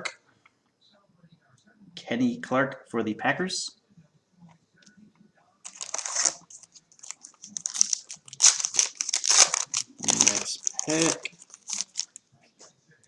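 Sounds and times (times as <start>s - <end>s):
foil wrapper crinkling: 5.6s - 12.2s.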